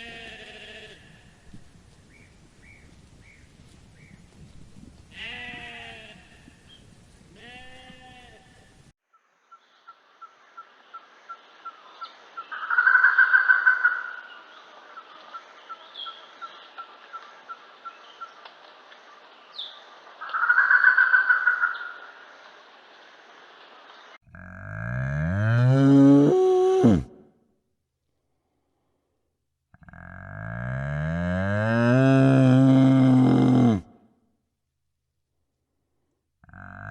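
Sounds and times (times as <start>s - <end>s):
animal bleating: 0.0s - 1.2s, 5.1s - 6.5s, 7.4s - 8.6s, 29.8s - 30.8s, 36.4s - 36.9s.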